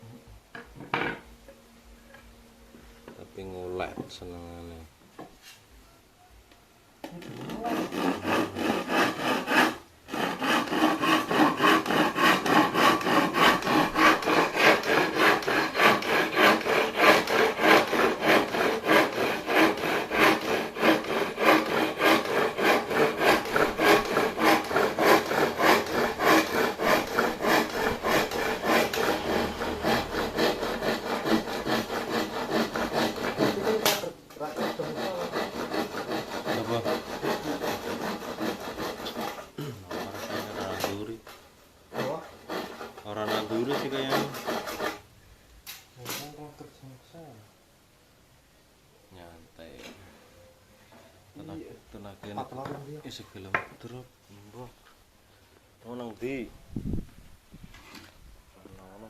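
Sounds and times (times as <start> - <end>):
hand saw cutting wood: 7.2 - 45.1.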